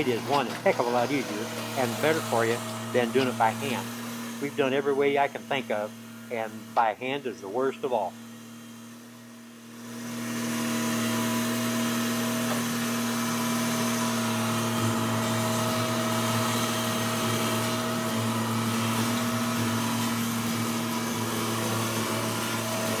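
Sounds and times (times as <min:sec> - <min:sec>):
skid loader engine running: 0:00.0 - 0:09.2
constant whine: 0:00.0 - 0:09.3.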